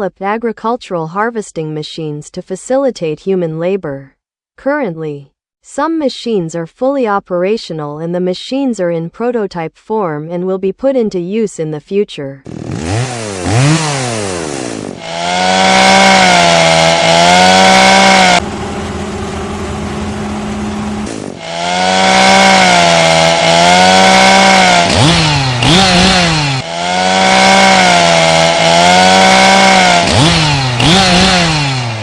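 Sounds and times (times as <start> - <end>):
chainsaw running at high revs: 12.5 - 32.0.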